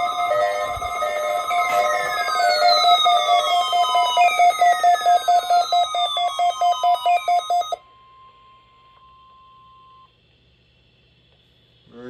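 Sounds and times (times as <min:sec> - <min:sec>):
rapid electronic alarm beeping: 0:00.0 - 0:08.7.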